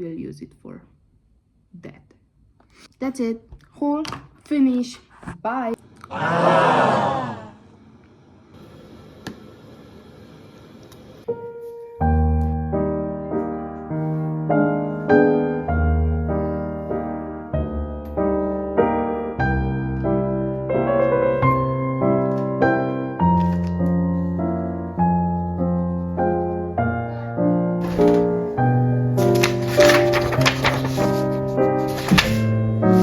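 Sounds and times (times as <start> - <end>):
piano music: 11.3 - 33.0.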